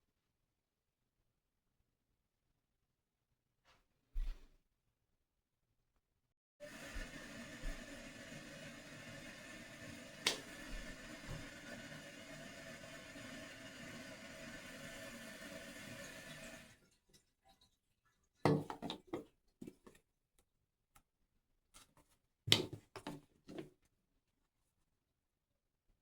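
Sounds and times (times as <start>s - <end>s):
water running from a tap: 6.6s - 17.0s.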